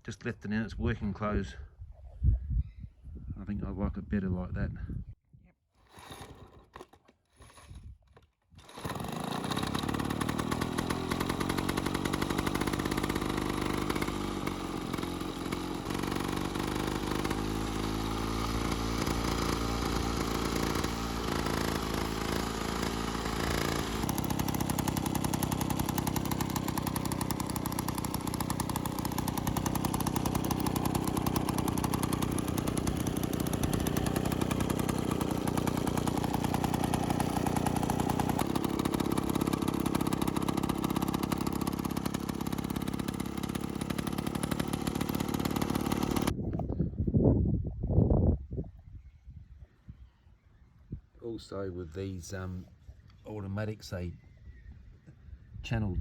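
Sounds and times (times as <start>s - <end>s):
lawn mower engine running: 5.9s - 46.4s.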